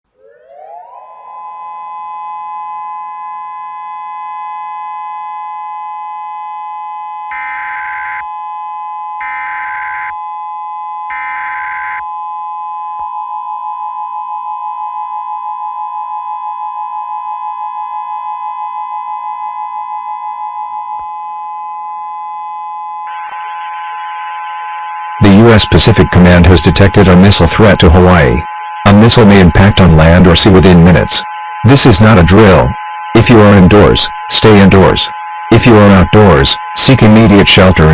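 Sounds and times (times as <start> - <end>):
civil defense siren wailing: 0.1 - 37.9
two-tone attention signal: 23.0 - 37.9
data noise bursts: 25.2 - 37.9.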